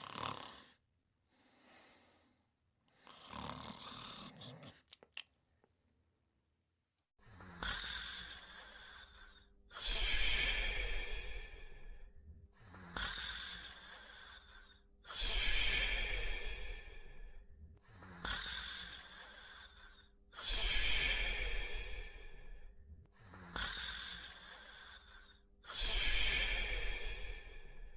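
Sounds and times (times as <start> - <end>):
snoring: 0.0 - 0.8, 2.9 - 4.9, 7.2 - 27.9.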